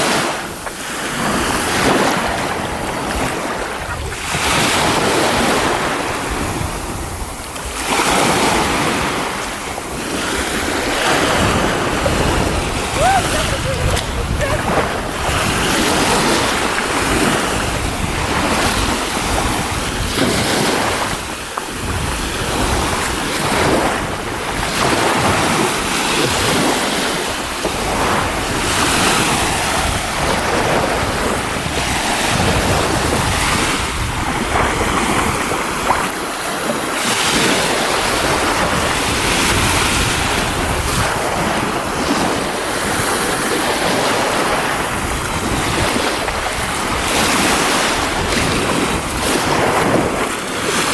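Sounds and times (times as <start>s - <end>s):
surf washing onto shore: 0.0s - 50.9s
wind buffeting microphone: 0.0s - 50.9s.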